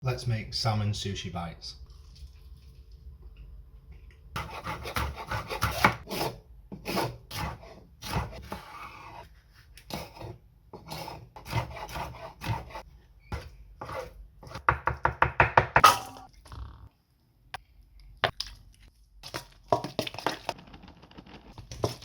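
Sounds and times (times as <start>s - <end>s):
knife scraping board: 4.4s - 14.6s.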